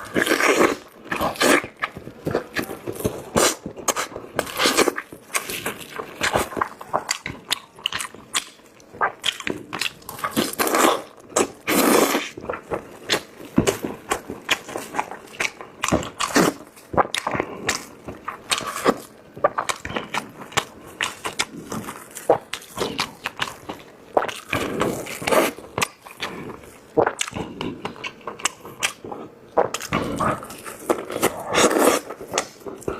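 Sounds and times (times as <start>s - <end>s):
biting and chewing food: 0.0s - 32.9s
mouth clicks and smacks: 27.0s - 32.9s.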